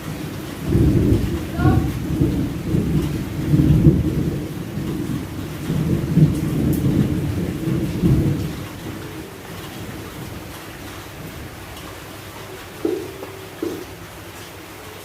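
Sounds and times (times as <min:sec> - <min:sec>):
thunder rumbling: 0:00.0 - 0:11.6
steady rain: 0:00.0 - 0:15.0.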